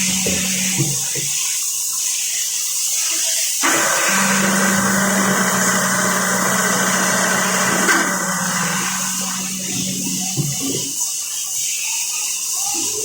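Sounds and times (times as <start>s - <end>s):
motor hum: 0.0s - 1.1s, 3.6s - 10.9s
hydraulic machinery hiss: 3.6s - 11.0s.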